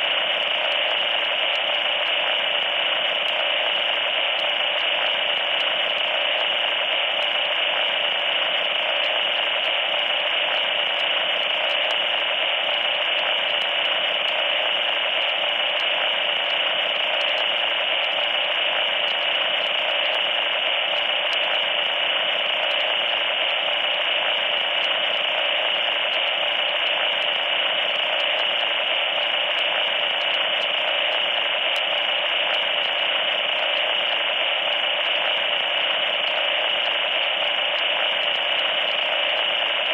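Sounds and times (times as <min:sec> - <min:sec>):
loud static hiss: 0:00.0 - 0:39.9.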